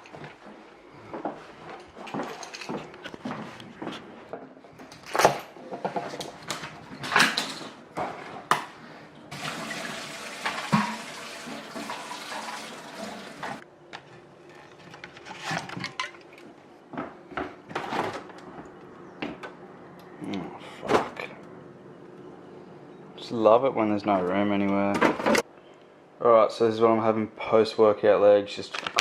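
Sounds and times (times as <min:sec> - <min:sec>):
objects knocking and clattering: 0:01.2 - 0:08.7, 0:10.4 - 0:12.1, 0:13.4 - 0:19.6
running tap water: 0:09.3 - 0:13.6.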